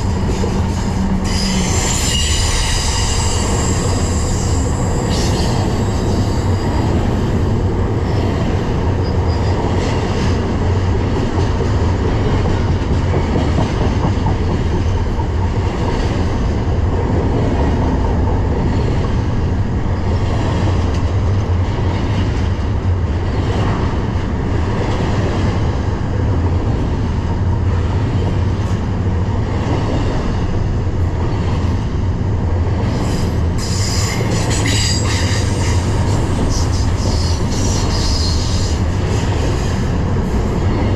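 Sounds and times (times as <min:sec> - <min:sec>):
freight train rumbling and clattering: 0:00.0 - 0:40.9
high wheel squeal: 0:00.7 - 0:06.7.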